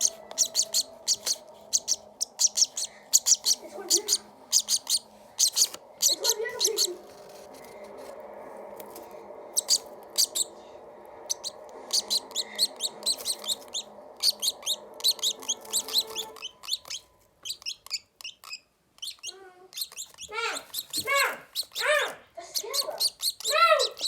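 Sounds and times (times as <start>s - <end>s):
baby bird chirping shrilly: 0.0s - 7.4s, 9.5s - 10.5s, 11.2s - 24.0s
steady low hum: 0.0s - 18.2s.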